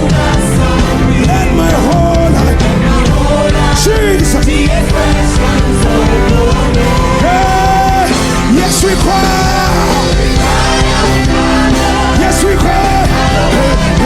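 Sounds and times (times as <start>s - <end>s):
full band playing: 0.0s - 14.0s
person singing with vibrato: 0.0s - 14.0s.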